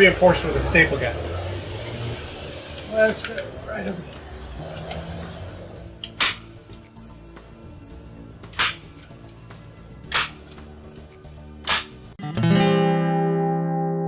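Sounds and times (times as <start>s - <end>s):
background music: 0.0s - 14.0s
staple gun firing: 6.1s - 6.5s, 8.6s - 9.0s, 10.1s - 10.6s, 11.6s - 12.0s.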